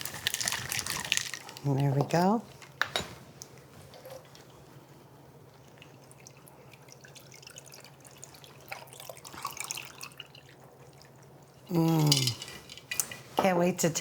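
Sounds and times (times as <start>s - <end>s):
liquid trickling into a glass: 5.8s - 11.2s
ice clinking in a glass: 11.9s - 12.9s.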